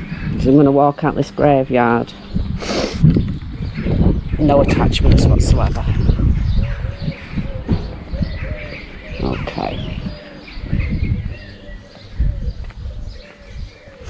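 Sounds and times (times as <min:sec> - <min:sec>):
low thumps and rumble: 0:00.0 - 0:13.8
small birds chirping: 0:00.0 - 0:14.0
pigeon cooing: 0:05.9 - 0:14.0.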